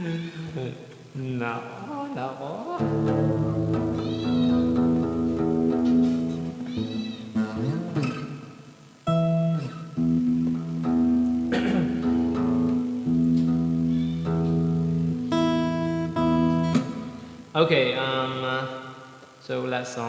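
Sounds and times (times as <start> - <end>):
guitar chords strummed: 2.8 - 17.6.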